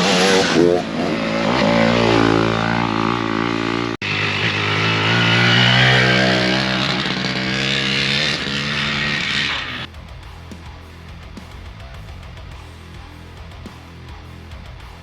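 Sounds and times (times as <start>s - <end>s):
dirt bike engines revving: 0.0s - 9.9s
rock guitar music: 0.0s - 15.0s.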